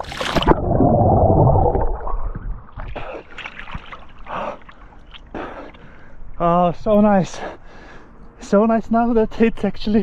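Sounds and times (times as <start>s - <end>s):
splash into water: 0.0s - 4.8s
water sloshing: 0.0s - 6.4s.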